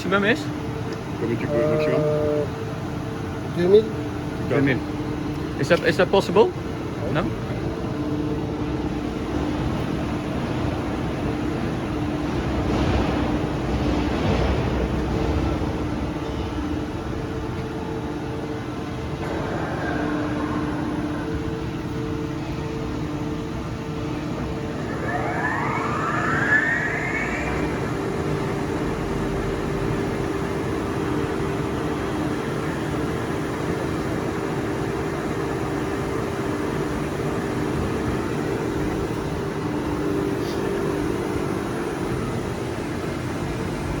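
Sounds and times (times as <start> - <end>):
spindle whine rising in pitch: 1.2 - 2.6, 19.0 - 31.4
milling machine humming: 23.6 - 30.4.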